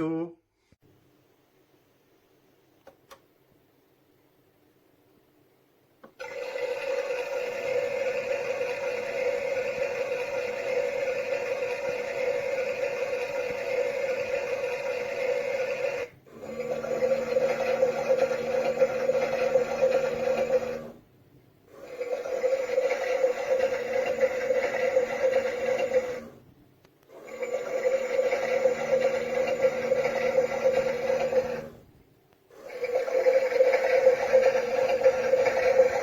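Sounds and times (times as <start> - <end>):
toy washing machine whirring: 6.1 - 21.1, 21.7 - 26.4, 27.1 - 31.9, 32.5 - 36.0.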